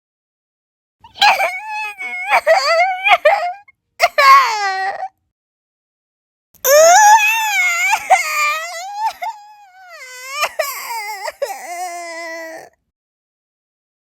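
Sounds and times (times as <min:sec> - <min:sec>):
young child crying loudly: 0:01.1 - 0:05.1, 0:06.7 - 0:12.7.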